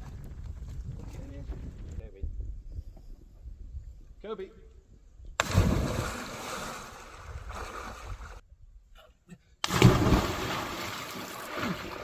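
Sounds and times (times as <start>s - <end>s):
water splashing and sloshing: 5.4s - 8.4s, 9.6s - 12.0s.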